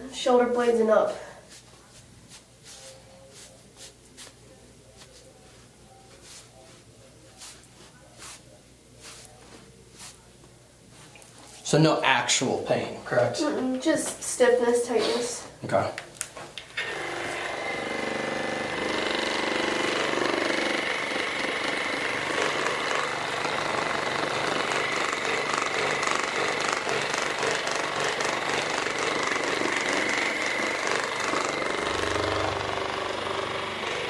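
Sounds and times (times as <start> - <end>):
electric massager buzzing: 16.6 - 34.0.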